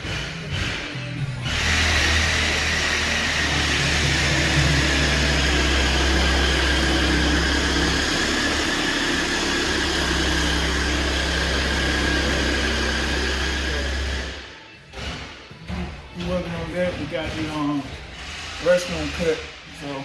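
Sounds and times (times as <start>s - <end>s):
machine running with low hum: 0.0s - 14.3s.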